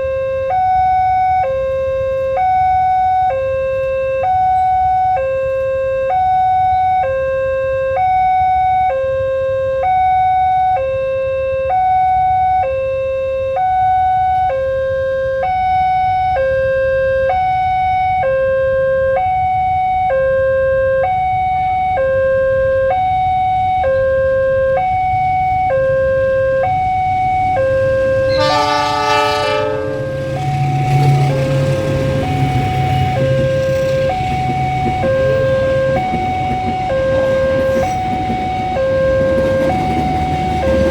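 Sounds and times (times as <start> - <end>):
level crossing alarm two-tone: 0.2 - 40.9
train horn: 28.0 - 33.4.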